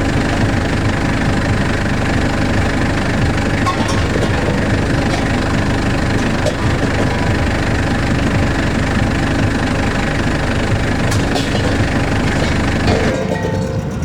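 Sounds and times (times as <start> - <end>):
engine knocking: 0.0 - 14.0.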